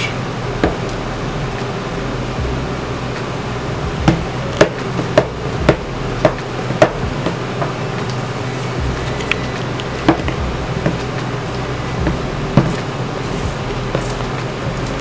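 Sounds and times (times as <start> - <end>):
steady low hum: 5.4 - 15.0.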